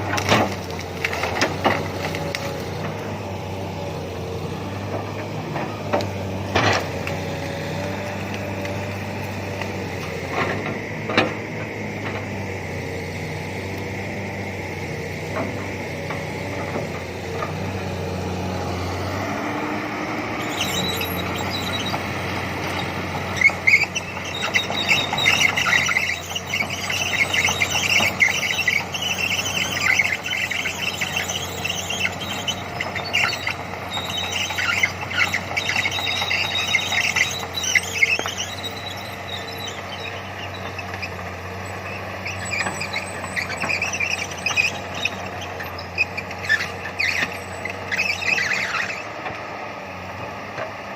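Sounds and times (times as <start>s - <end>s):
excavator running: 0.0s - 50.9s
high-pitched machine squealing: 20.4s - 49.1s.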